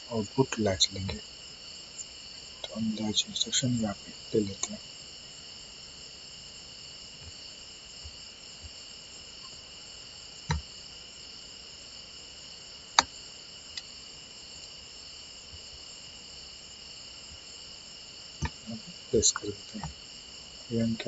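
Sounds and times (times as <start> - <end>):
high-pitched background drone: 2.6 - 4.8, 18.5 - 19.9.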